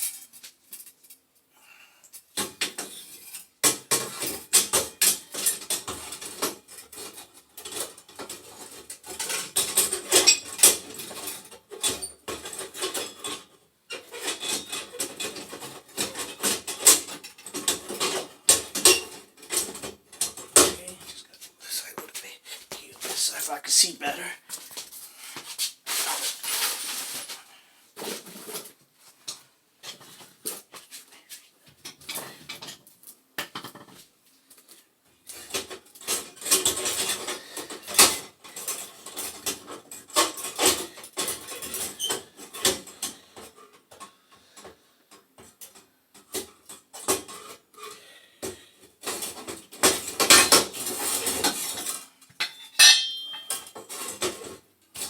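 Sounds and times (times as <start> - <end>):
metal parts clinking and scraping: 0.0 - 1.2, 2.8 - 20.5, 49.0 - 54.5.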